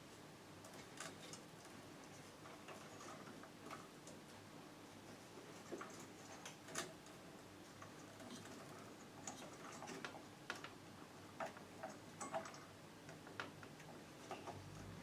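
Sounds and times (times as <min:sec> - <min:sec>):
light clicks and taps: 0:07.8 - 0:10.8, 0:11.4 - 0:14.9.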